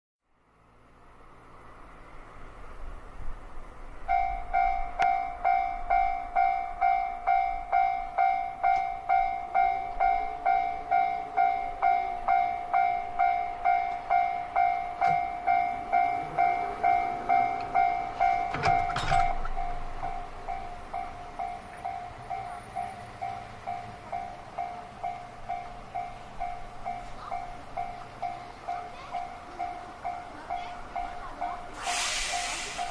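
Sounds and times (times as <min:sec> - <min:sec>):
two-tone level crossing bell: 0:04.1 - 0:31.8
train wheel clatter: 0:13.7 - 0:32.9.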